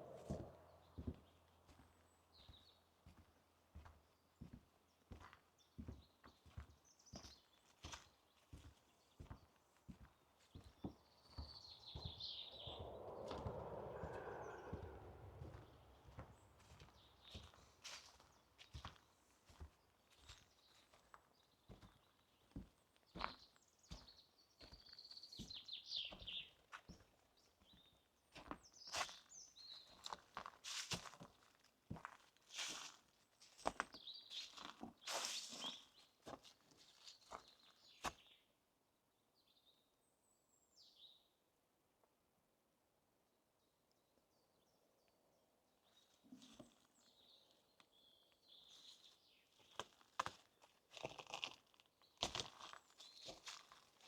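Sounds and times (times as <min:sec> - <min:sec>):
footsteps on forest path: 0:00.0 - 0:38.3, 0:48.0 - 0:54.0
songbird trilling and chirping: 0:11.2 - 0:16.2.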